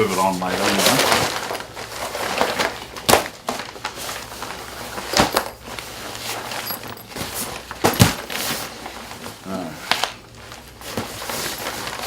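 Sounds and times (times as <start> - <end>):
packaging rustling: 3.5 - 8.7
items knocking when put down: 5.1 - 5.7, 6.4 - 8.5.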